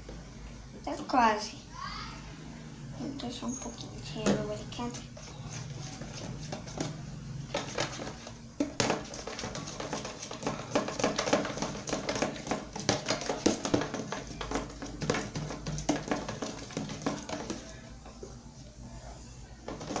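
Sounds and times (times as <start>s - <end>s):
spoon stirring slime: 3.3s - 18.7s.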